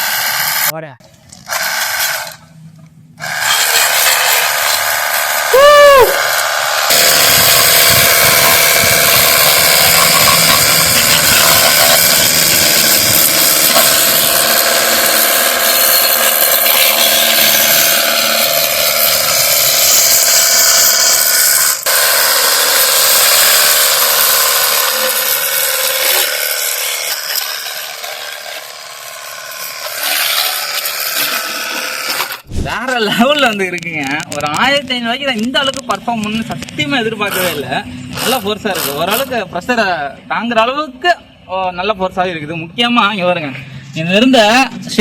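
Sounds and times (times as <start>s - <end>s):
pressure washer spraying: 6.5s - 18.7s.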